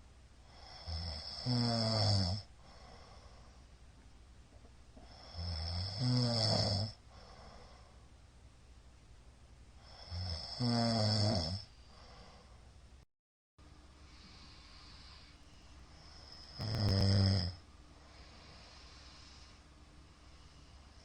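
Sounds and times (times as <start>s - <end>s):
quiet breathing hiss: 0.0s - 13.0s, 13.6s - 21.0s
man snoring loudly: 0.5s - 2.5s, 5.0s - 7.0s, 9.8s - 11.7s, 16.0s - 17.6s.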